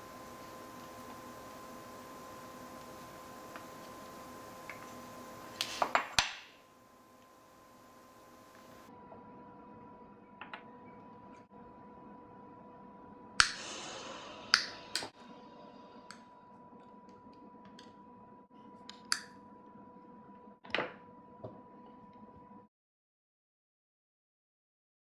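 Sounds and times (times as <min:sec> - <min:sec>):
hiss: 0:00.0 - 0:08.9, 0:13.4 - 0:15.8.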